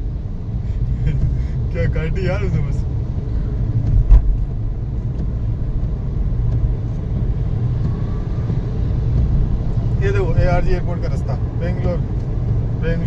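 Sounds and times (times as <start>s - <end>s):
road and engine rumble: 0.0s - 13.0s
sharp thump: 3.8s - 4.5s.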